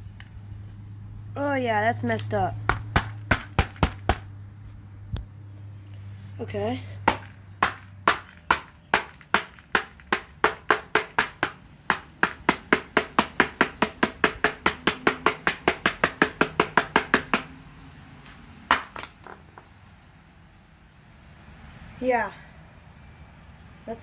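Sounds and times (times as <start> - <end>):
rock striking a phone: 7.1 - 17.5.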